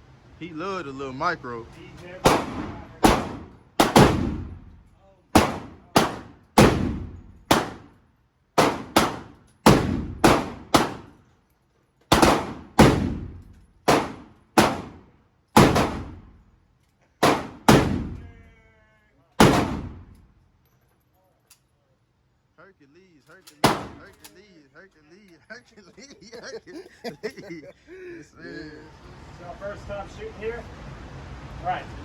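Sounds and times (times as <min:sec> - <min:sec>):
gunshots: 0:02.2 - 0:04.7, 0:05.3 - 0:07.9, 0:08.6 - 0:11.2, 0:12.1 - 0:16.4, 0:17.2 - 0:18.4, 0:19.4 - 0:20.2, 0:23.6 - 0:24.2.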